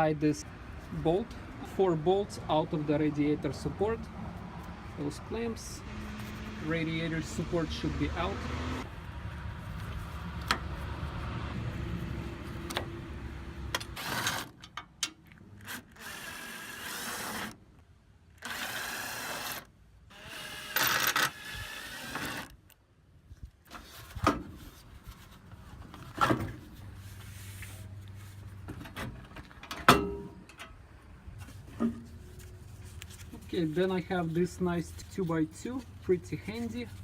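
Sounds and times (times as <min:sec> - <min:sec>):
power drill running: 0:18.4 - 0:22.5.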